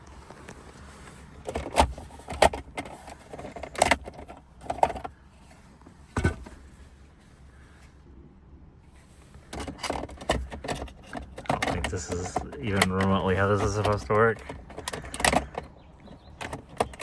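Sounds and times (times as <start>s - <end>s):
sharp plastic clicks and knocks: 9.5s - 17.0s.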